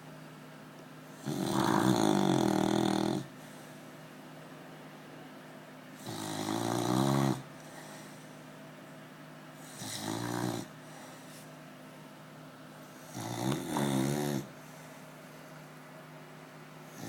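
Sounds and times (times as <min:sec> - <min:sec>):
dog snoring: 0:01.2 - 0:03.3, 0:06.0 - 0:07.5, 0:09.6 - 0:10.8, 0:13.0 - 0:14.5.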